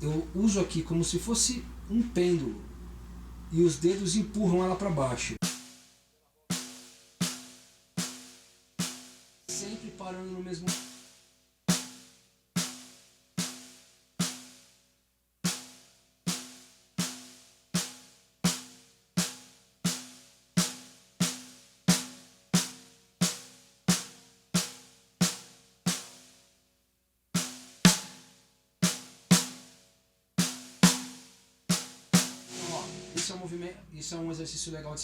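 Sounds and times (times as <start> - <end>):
snare drum strokes: 4.0 - 14.7, 27.4 - 29.8, 30.4 - 34.2.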